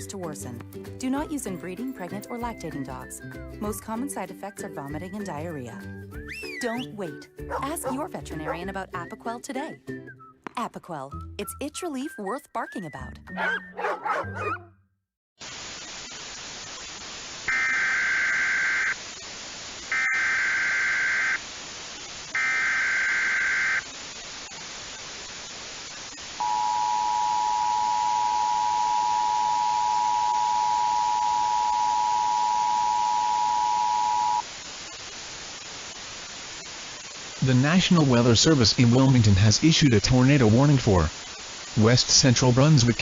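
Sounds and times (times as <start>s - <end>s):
person speaking: 7.5s - 9.0s
radio static: 15.4s - 43.0s
screeching data bursts: 22.3s - 23.8s, 26.4s - 34.4s
two-tone attention signal: 26.4s - 34.4s.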